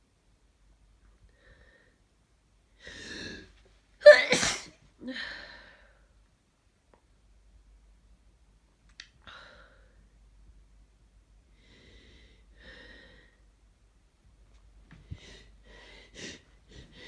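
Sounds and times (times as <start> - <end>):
person sneezing: 4.0 - 4.8.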